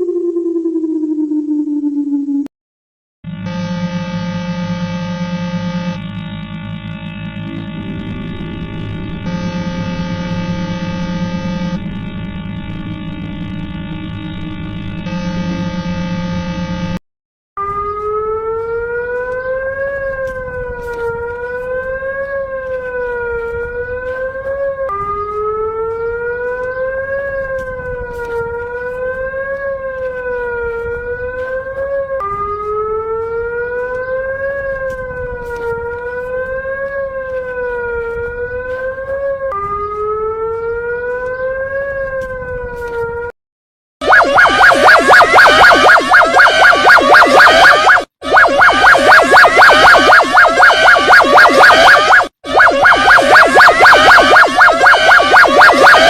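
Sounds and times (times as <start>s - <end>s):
wailing siren: 0.0s - 2.5s, 3.2s - 17.0s, 17.6s - 43.4s, 44.0s - 56.0s
low rumble: 3.3s - 17.0s.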